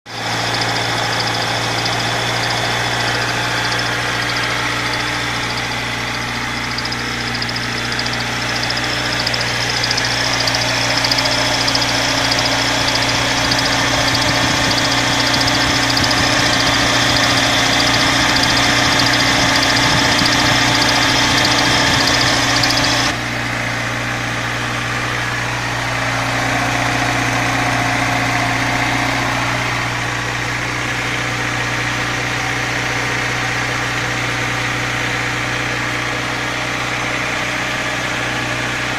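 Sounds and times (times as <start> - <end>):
high whining tones: 0.1 - 23.2
car engine idling: 0.1 - 37.6.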